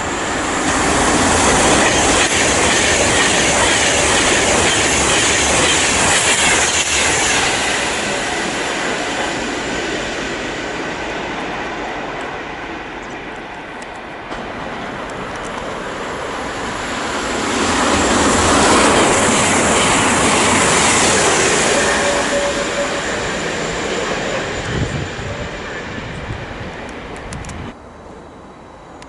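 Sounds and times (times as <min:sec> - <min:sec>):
train passing: 0:00.0 - 0:29.0
train wheels squealing: 0:00.1 - 0:09.6, 0:16.9 - 0:26.4.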